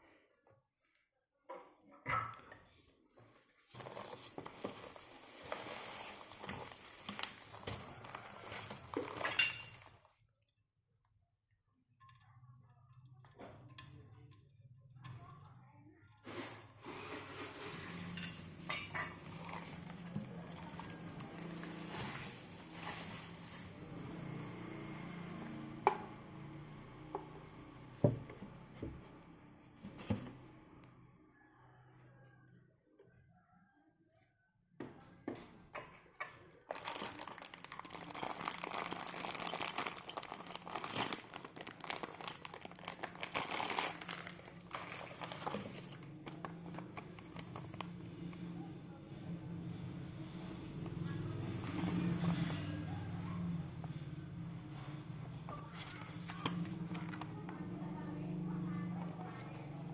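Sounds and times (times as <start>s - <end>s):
packaging rustling and crinkling: 3.6s - 10.0s, 17.2s - 24.0s, 36.7s - 47.9s.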